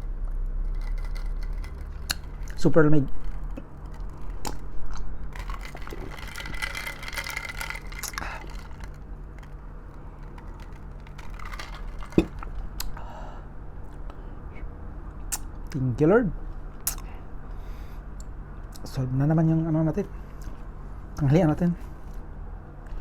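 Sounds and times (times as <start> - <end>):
steady low hum: 0.0 - 23.0
person chewing: 0.7 - 2.6
mouth clicks and smacks: 12.2 - 13.0, 15.3 - 15.8, 16.8 - 17.1.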